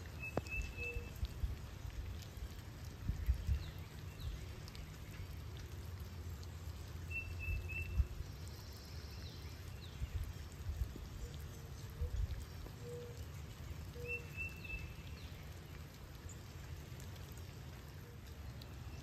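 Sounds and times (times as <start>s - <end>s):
steady rain falling: 0.0s - 19.0s.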